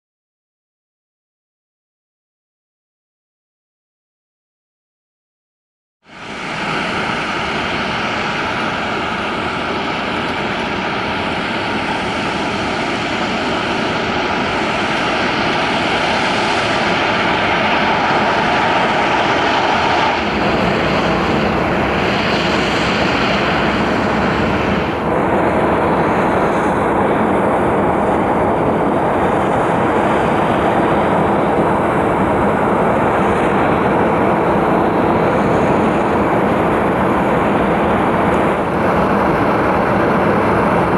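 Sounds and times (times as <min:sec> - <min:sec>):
helicopter engines and rotor: 0:06.1 - 0:40.9
high whine: 0:06.2 - 0:40.9.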